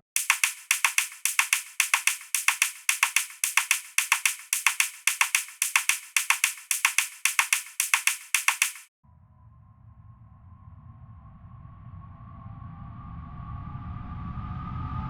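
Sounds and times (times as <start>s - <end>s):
dry ticking percussion loop: 0.0s - 8.9s.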